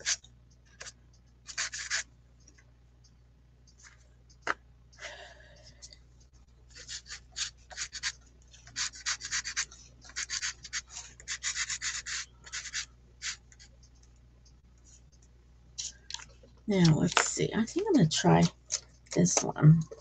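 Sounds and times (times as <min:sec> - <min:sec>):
pastel scratching on paper: 0:01.5 - 0:02.0, 0:06.8 - 0:13.4.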